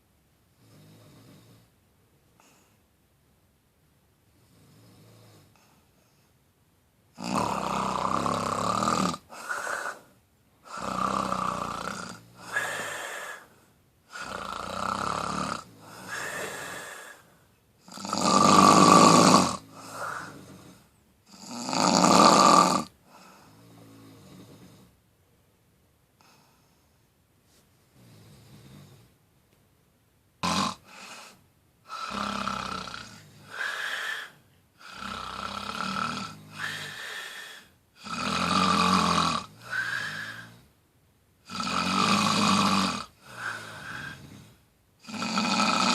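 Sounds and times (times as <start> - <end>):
loud snoring: 0.6 - 1.7, 4.4 - 5.6, 7.2 - 13.5, 14.1 - 25.0, 28.0 - 29.2, 30.4 - 40.7, 41.4 - 45.9.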